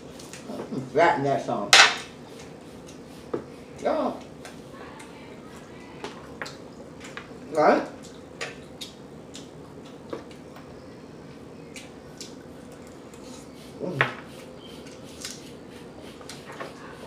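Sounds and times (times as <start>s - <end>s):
chewing and mouth smacking: 7.9s - 10.7s, 11.7s - 13.5s.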